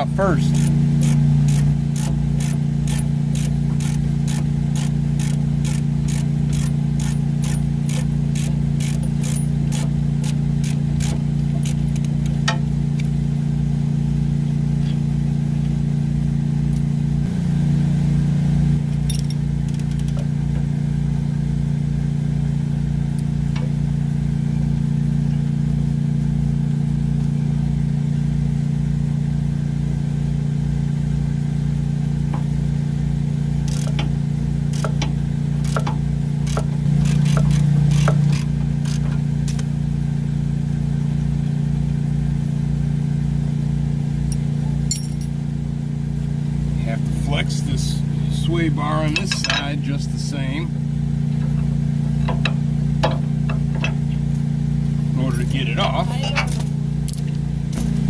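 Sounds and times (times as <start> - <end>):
loud mechanical hum: 0.0 - 58.0.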